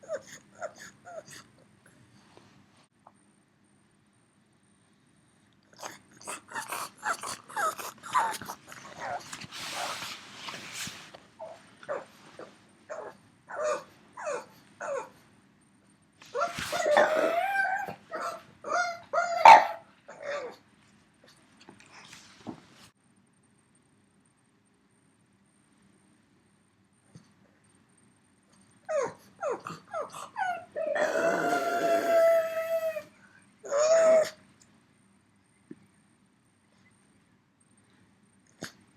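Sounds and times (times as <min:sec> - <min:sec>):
dog whining: 0:00.0 - 0:01.4, 0:05.8 - 0:10.1, 0:11.4 - 0:15.2, 0:16.3 - 0:20.6, 0:28.9 - 0:34.4.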